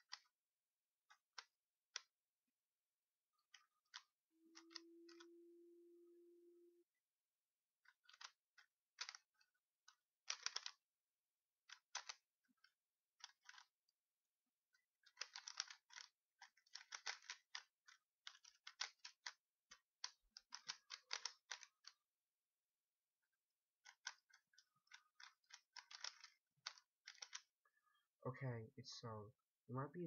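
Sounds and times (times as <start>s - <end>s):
puzzle cube plastic clicks: 0.0s - 0.4s, 1.0s - 2.4s, 3.2s - 5.5s, 7.6s - 22.2s, 23.3s - 27.6s.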